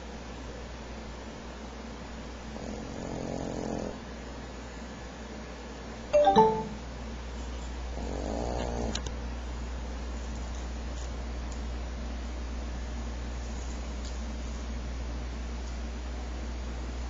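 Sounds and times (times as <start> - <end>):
dog snoring: 2.5 - 4.1, 7.9 - 9.0.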